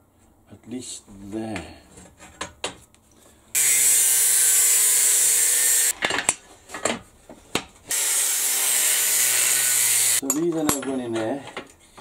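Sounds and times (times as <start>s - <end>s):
power tool grinding metal: 3.6s - 5.9s, 7.9s - 10.2s.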